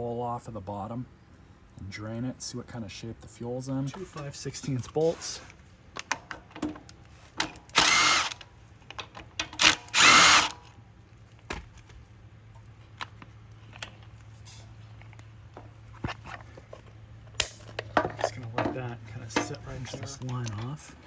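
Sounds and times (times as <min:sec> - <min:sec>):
power drill whirring: 0:07.7 - 0:08.4, 0:09.6 - 0:10.6.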